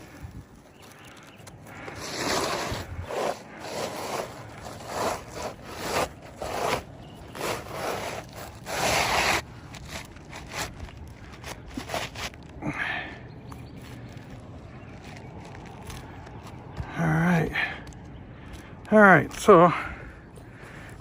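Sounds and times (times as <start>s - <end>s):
roof shingles being scraped: 0.8s - 12.6s.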